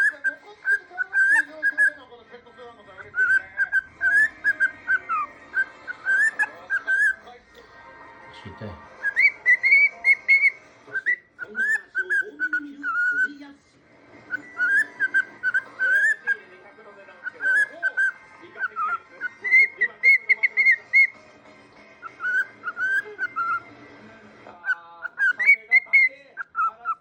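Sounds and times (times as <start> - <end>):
cockatiel whistling a tune: 0.0 - 2.0, 3.0 - 7.2, 9.0 - 13.4, 14.2 - 16.4, 17.2 - 21.2, 22.0 - 23.8, 24.6 - 27.0.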